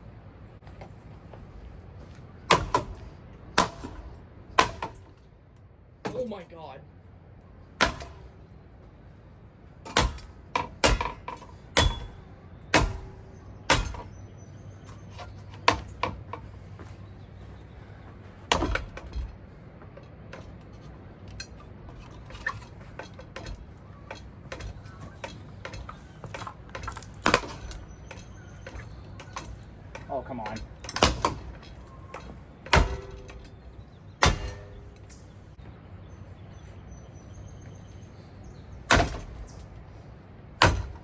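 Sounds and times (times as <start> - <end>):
ceiling fan being smashed: 3.6 - 5.2, 7.8 - 8.3, 9.9 - 14.1, 18.5 - 19.3, 22.0 - 33.5, 34.2 - 35.3, 38.9 - 39.5, 40.6 - 41.0.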